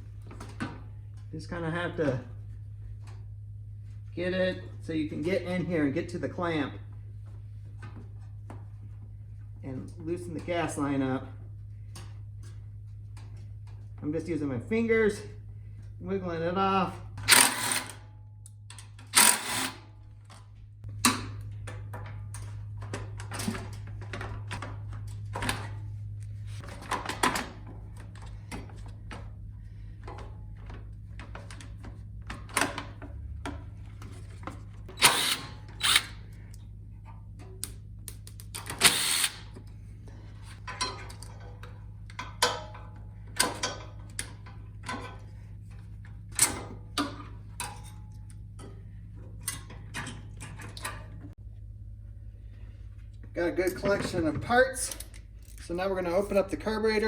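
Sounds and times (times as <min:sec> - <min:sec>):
steady low hum: 0:00.0 - 0:57.0
tools and metal parts clinking: 0:17.2 - 0:20.5, 0:38.4 - 0:45.4, 0:46.3 - 0:51.2, 0:54.8 - 0:55.8.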